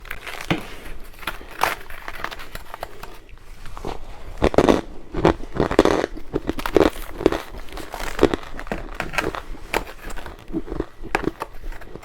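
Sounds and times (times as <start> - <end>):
crunchy chewing of frost: 0.0 - 12.0.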